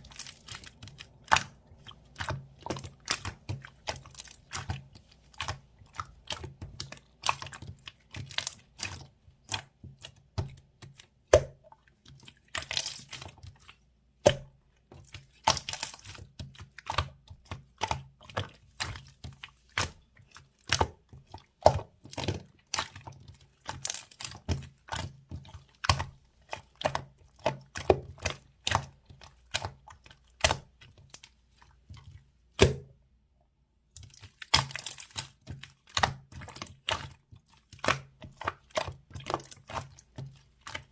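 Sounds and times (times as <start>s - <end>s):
slime crackling: 0.0s - 10.2s, 12.4s - 13.4s, 34.1s - 40.9s
slime squishing with wet pops: 0.0s - 33.1s, 33.8s - 40.9s.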